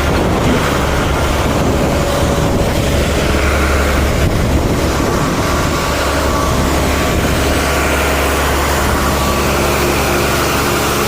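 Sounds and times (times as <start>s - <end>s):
vehicle engine running: 0.0s - 11.0s.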